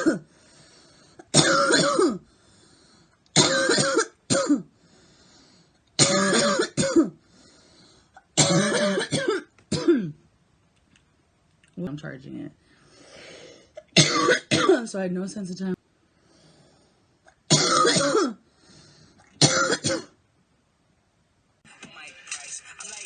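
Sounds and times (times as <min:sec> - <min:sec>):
girl coughing: 0:00.0 - 0:00.3, 0:01.3 - 0:02.2, 0:03.4 - 0:04.7, 0:06.0 - 0:07.2, 0:08.2 - 0:10.2, 0:13.8 - 0:14.9, 0:17.4 - 0:18.4, 0:19.4 - 0:20.2.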